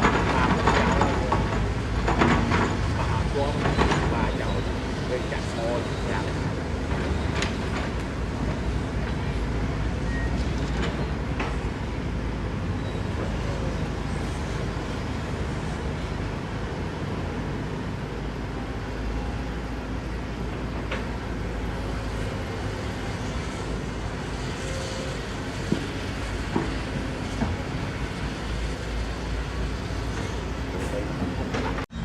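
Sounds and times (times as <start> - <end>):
diesel engine running: 0.0 - 16.2.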